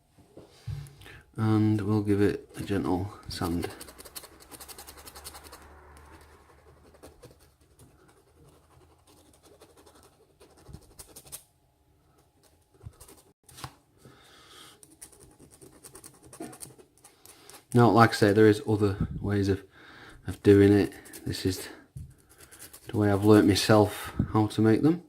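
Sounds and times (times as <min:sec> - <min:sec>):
sanding scratching strokes: 0:02.6 - 0:11.4.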